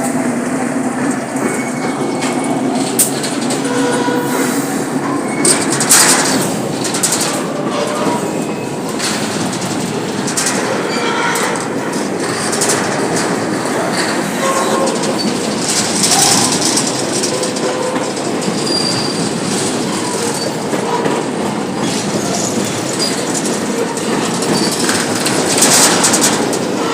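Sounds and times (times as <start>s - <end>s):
train wheels clacking on rail joints: 0.0s - 26.9s.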